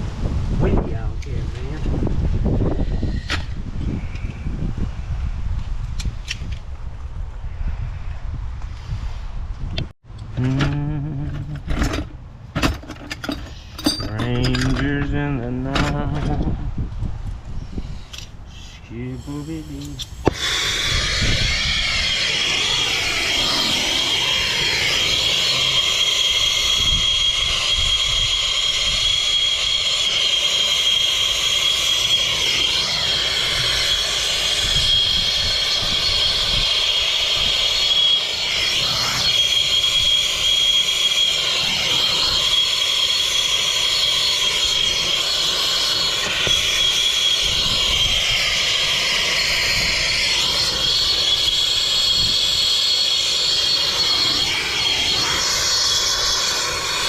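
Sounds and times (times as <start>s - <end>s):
torch flame hissing and whistling: 0.0s - 9.6s, 17.4s - 57.0s.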